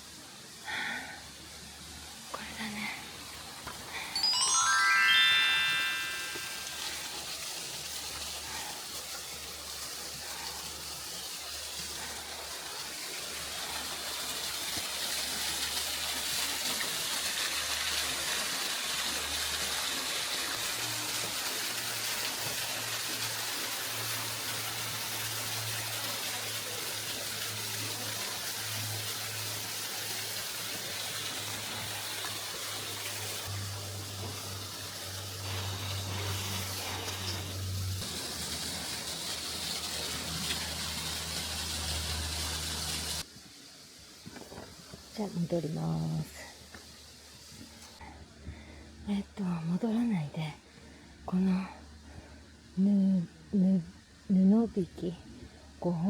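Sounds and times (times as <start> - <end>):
flowing water rushing: 3.0 - 43.3.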